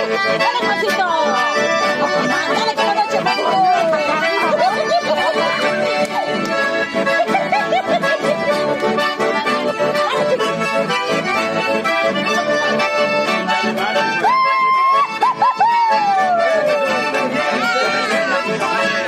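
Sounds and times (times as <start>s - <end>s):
accordion folk music: 0.0s - 19.0s
long high shout: 14.2s - 17.0s.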